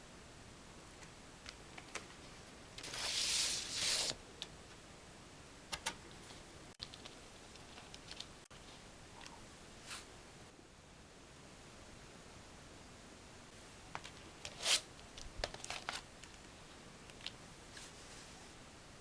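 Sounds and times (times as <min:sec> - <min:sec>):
rustling slide of packaging: 0:02.8 - 0:04.2, 0:14.5 - 0:14.8.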